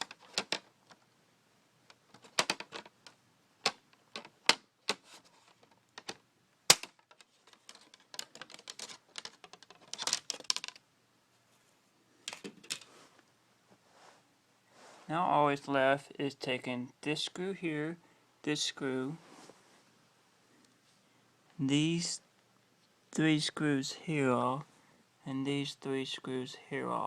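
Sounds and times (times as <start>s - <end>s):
plastic parts clicking: 0.0s - 1.0s, 1.9s - 10.8s.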